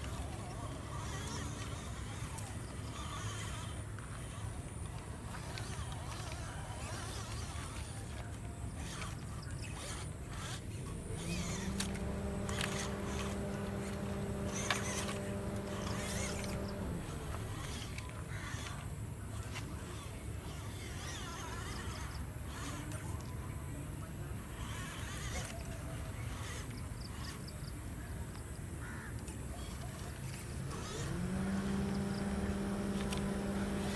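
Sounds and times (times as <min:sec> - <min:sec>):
small electric motor whirring: 0:00.0 - 0:23.4, 0:24.4 - 0:27.7, 0:29.6 - 0:33.9
wheels clicking and scraping: 0:00.0 - 0:33.9
steady hum: 0:10.8 - 0:18.0, 0:30.6 - 0:33.9.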